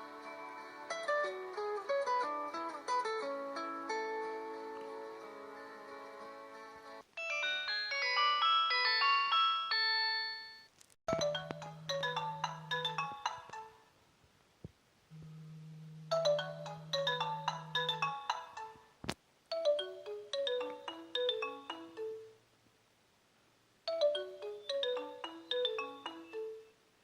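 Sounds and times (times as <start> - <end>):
phone ringtone melodies: 7.2 - 13.8, 15.1 - 18.9, 19.5 - 22.4, 23.9 - 26.7
steady low hum: 14.9 - 17.9.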